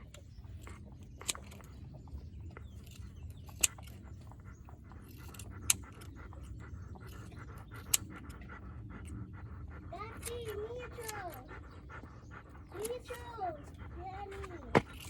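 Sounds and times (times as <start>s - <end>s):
faint clicks: 12.7s - 13.4s.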